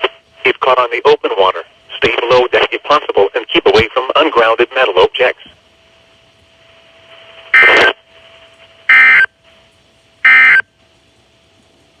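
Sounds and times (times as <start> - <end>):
faint steady hum: 0.0 - 12.0
harsh digital data bursts: 7.6 - 8.0, 8.9 - 9.3, 10.3 - 10.6.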